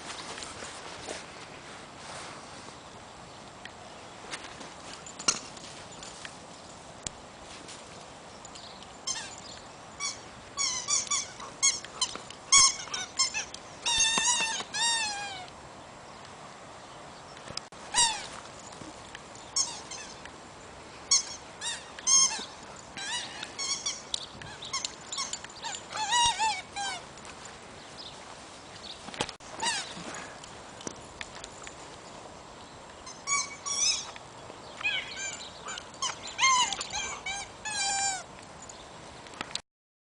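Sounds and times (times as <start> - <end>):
dog toy squeaker squeaking: 9.0 - 9.4, 10.0 - 15.5, 17.9 - 18.3, 19.6 - 20.2, 21.1 - 27.0, 29.6 - 29.9, 33.0 - 34.2, 34.8 - 38.2.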